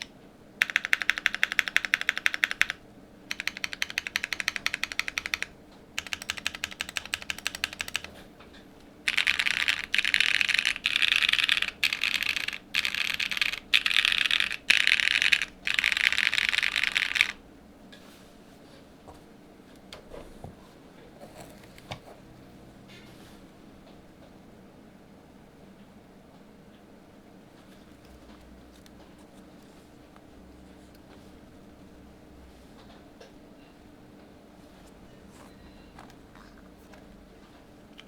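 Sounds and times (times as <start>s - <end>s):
mechanical keyboard clicks: 0.0s - 8.2s, 9.1s - 17.4s.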